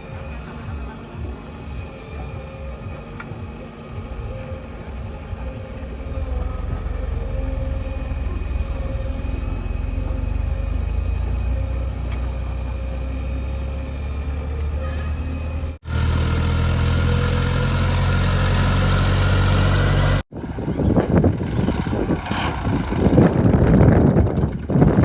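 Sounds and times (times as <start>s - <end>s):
heavy diesel engine running: 0.0s - 25.0s
rough gusty noise: 20.2s - 25.0s.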